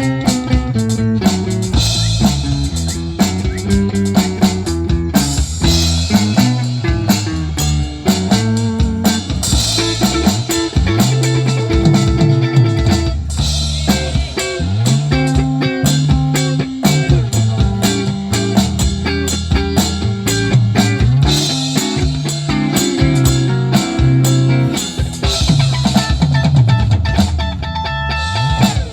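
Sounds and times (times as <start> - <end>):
rock band playing: 0.0 - 28.9.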